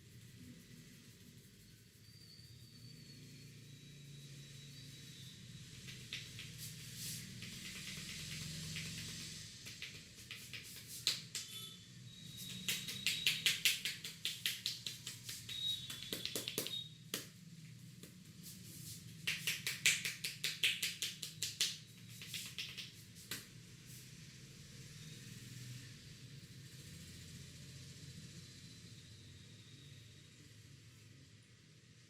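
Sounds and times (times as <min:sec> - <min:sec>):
hands tapping on head: 0:05.8 - 0:11.7, 0:12.4 - 0:17.4, 0:18.0 - 0:18.3, 0:19.1 - 0:23.5.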